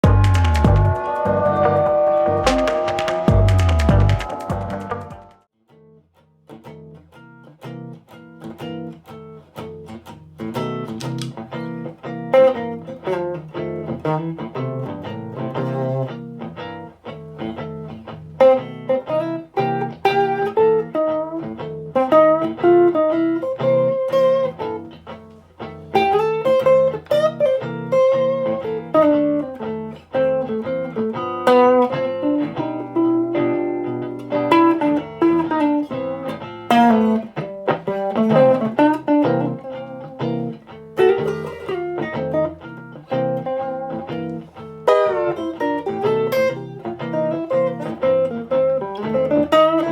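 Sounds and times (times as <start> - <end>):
electric guitar through amplifier: 0.0 - 5.5, 6.5 - 49.9.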